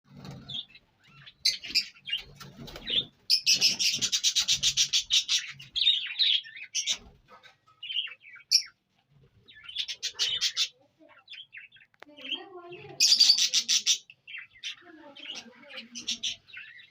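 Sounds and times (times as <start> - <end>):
parrot chirping: 9.5 - 16.9.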